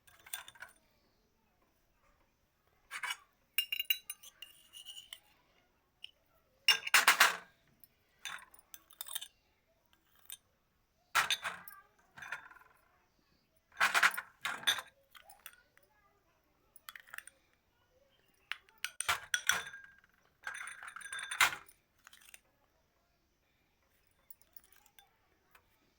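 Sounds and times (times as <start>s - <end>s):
kitchenware clinking and knocking: 0.0s - 0.7s, 2.9s - 5.3s, 6.7s - 7.5s, 8.2s - 9.3s, 11.2s - 12.8s, 13.7s - 15.6s, 18.5s - 22.4s.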